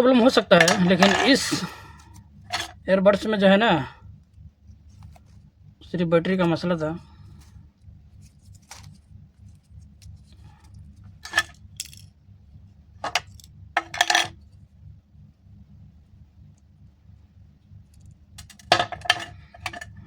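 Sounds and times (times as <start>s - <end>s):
steady low hum: 0.0s - 20.0s
small hard objects clinking: 18.4s - 19.9s.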